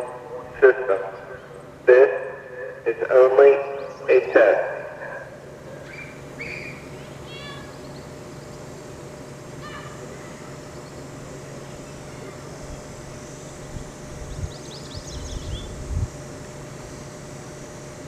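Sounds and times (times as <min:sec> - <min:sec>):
outdoor background hum: 0:00.0 - 0:18.0
short chirping calls: 0:05.8 - 0:06.9
wind buffeting microphone: 0:13.6 - 0:16.4.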